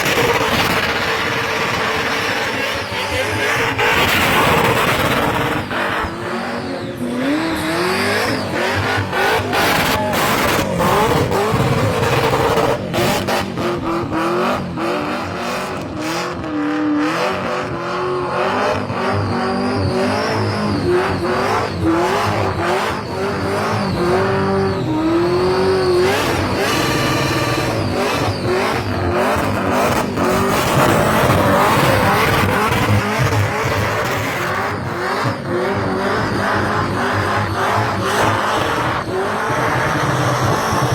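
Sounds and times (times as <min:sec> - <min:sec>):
car engine revving high: 0:00.0 - 0:40.9.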